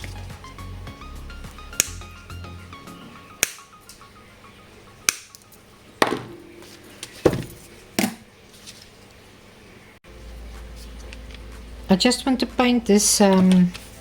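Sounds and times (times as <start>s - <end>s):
quiet background music: 0.0s - 14.0s
hard objects knocking on work surface: 6.0s - 8.2s.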